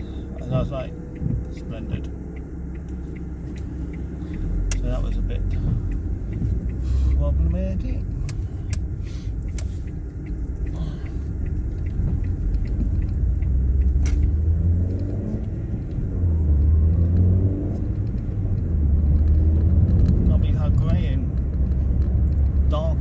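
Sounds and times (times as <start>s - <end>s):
car engine and road rumble: 0.0s - 23.0s.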